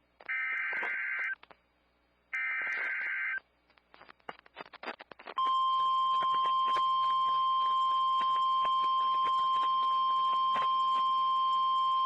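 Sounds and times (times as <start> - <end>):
faint crackling clicks: 0.2 - 1.6, 3.6 - 5.4.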